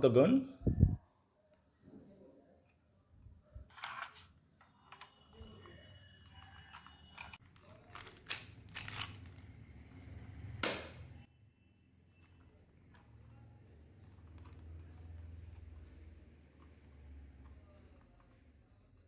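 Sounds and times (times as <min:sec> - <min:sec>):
plastic parts scraping and clicking: 0:03.6 - 0:09.6, 0:14.0 - 0:19.0.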